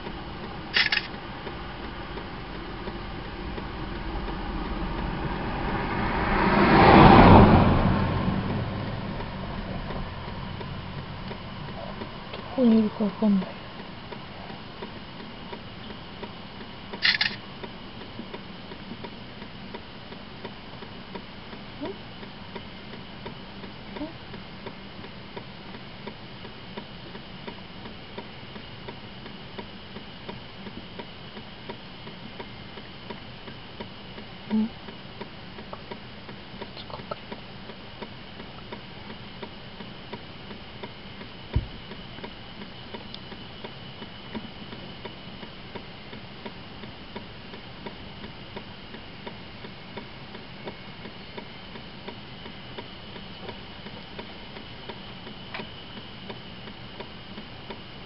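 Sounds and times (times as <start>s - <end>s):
low steady hum: 0.0s - 58.0s
car indicator ticking: 9.9s - 21.3s
sharp thump: 41.5s - 41.8s.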